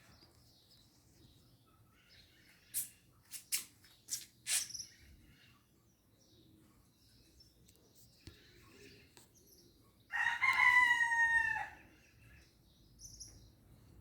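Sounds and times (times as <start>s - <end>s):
faint outdoor background: 0.0s - 14.0s
bird's sharp high-pitched calls: 2.1s - 5.1s.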